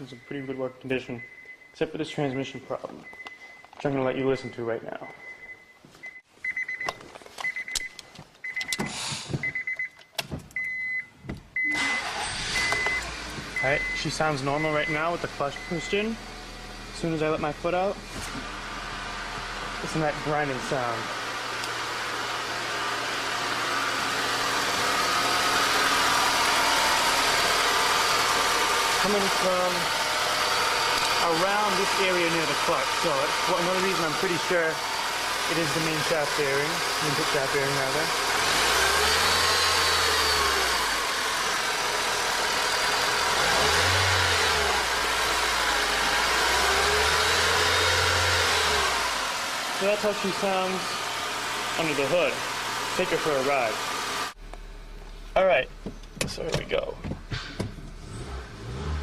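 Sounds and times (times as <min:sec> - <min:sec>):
car engine idling: 0:11.8 - 0:58.2
transmission grinding whine: 0:12.0 - 0:59.0.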